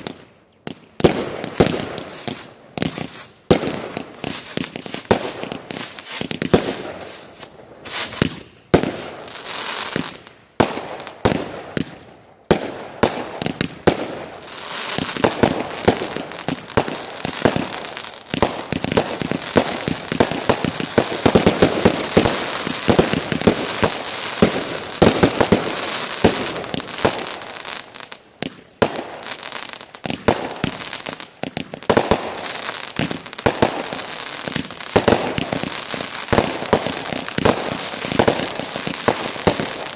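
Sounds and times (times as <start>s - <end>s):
fireworks bangs and crackling: 0.0s - 39.9s.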